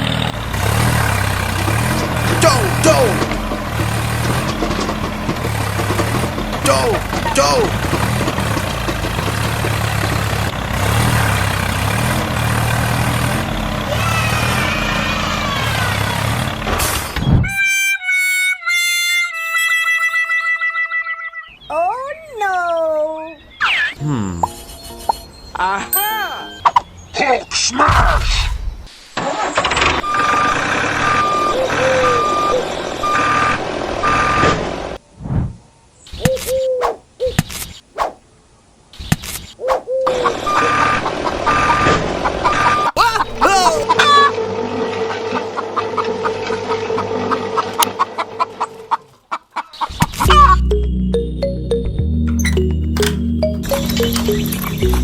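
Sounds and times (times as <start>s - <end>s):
tractor engine humming: 0.0s - 17.2s, 39.7s - 49.3s, 50.2s - 55.0s
reversing alarm beeping: 30.0s - 34.4s.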